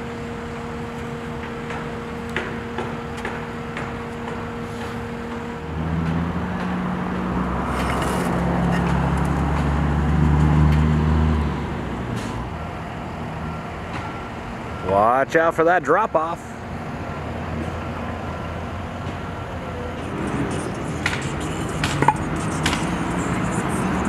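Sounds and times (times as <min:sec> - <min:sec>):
vehicle engine passing by: 0:05.7 - 0:12.5.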